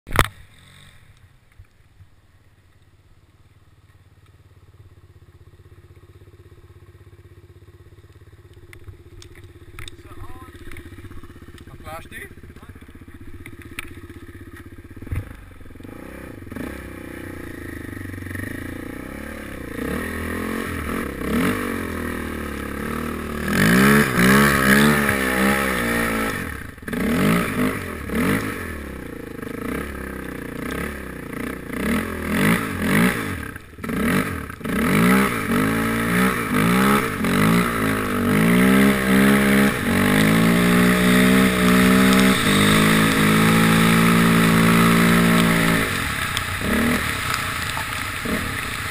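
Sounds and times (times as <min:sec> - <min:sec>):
quad engine revving: 0:08.4 - 0:48.9.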